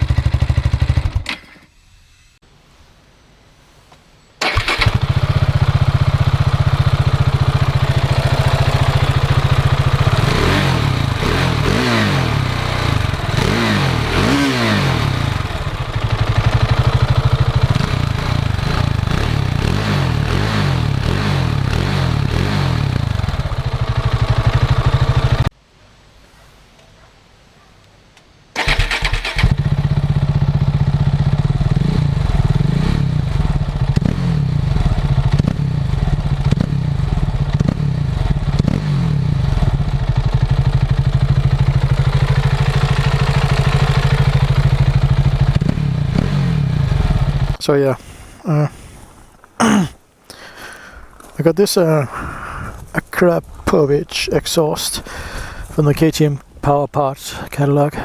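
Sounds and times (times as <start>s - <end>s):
motorcycle engine idling and revving: 0.0s - 1.7s, 4.4s - 25.5s, 28.6s - 47.6s.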